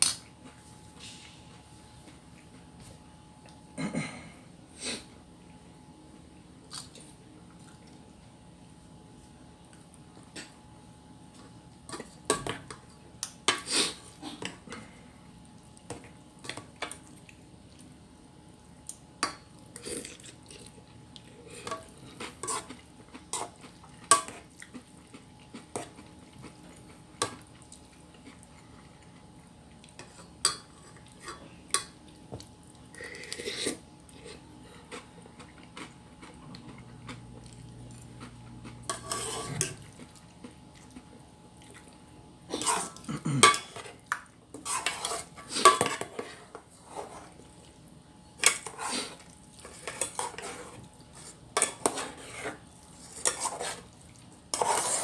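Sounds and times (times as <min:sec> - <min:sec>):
cutlery clinking against dishes: 0:42.6 - 0:44.0, 0:44.6 - 0:46.4.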